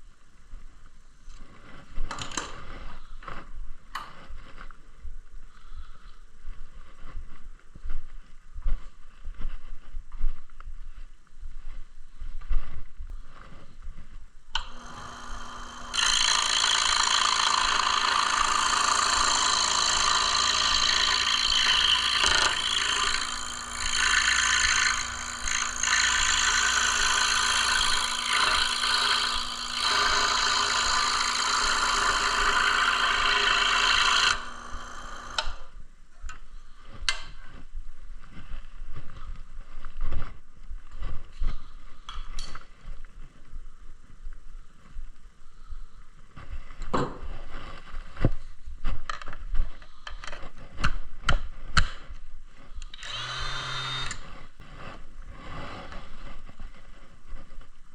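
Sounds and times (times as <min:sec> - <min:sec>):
scroll saw cutting wood: 0:14.6 - 0:35.7, 0:52.8 - 0:54.4.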